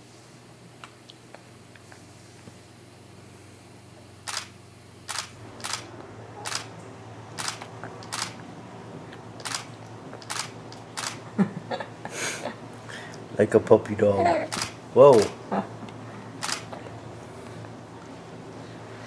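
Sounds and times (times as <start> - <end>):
camera shutter clicking: 4.3 - 4.5, 5.1 - 5.8, 6.4 - 6.7, 7.4 - 8.4, 9.4 - 11.2, 14.5 - 15.3, 16.4 - 16.7.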